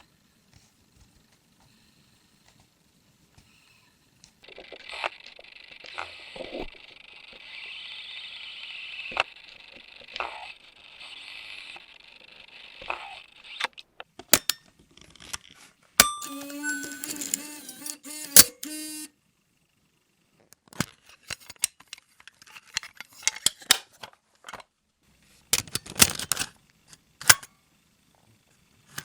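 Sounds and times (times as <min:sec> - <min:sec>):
camcorder mechanism whirring: 0:16.0 - 0:19.1
sharp mechanical clicks: 0:16.0 - 0:19.1.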